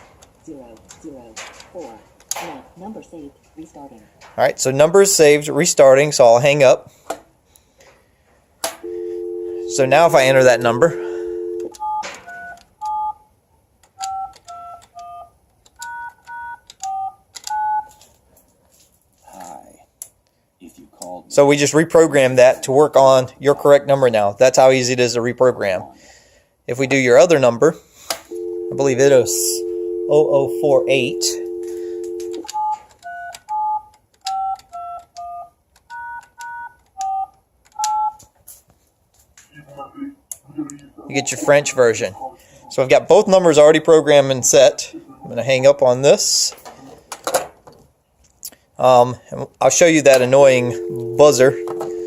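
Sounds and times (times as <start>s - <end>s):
touch-tone beeps: 8.8s - 13.2s, 28.3s - 33.8s, 50.6s - 52.0s
touch-tone keypad beeps: 50.7s - 52.0s.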